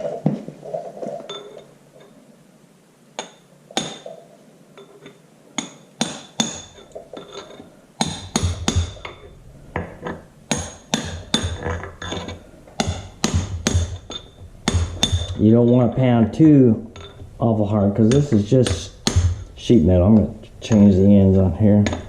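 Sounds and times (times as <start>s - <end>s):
hammer tapping sheet metal: 8.0s - 9.2s, 10.5s - 12.2s, 12.8s - 15.5s, 18.0s - 21.0s, 21.8s - 22.0s.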